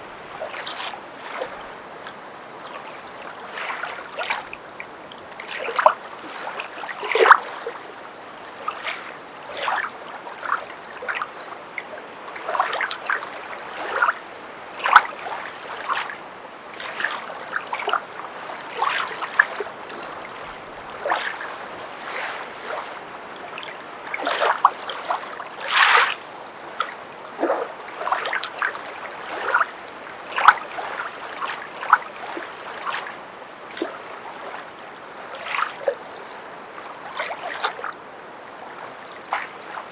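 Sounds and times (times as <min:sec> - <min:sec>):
footsteps splashing through water: 0:00.0 - 0:04.7, 0:16.8 - 0:26.2.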